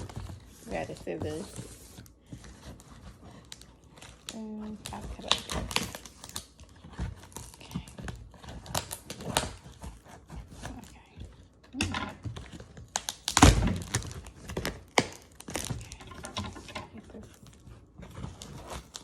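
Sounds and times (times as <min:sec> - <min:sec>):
cardboard box rustling: 0:00.0 - 0:11.4
scissors cutting packing tape: 0:03.4 - 0:10.3.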